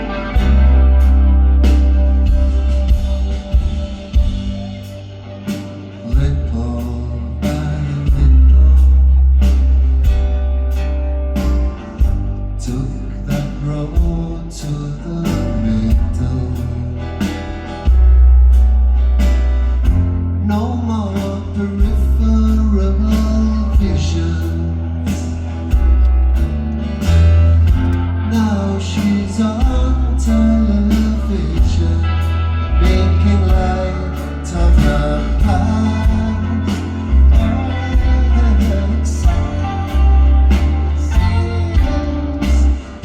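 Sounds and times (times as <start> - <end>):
drums with cymbal hits: 0.0 - 6.6, 11.4 - 12.4, 13.3 - 14.3, 17.2 - 20.6, 25.1 - 32.3, 32.9 - 43.0
bass line: 0.0 - 43.0
guitar: 0.0 - 43.0
person singing: 2.4 - 9.7, 28.2 - 43.0.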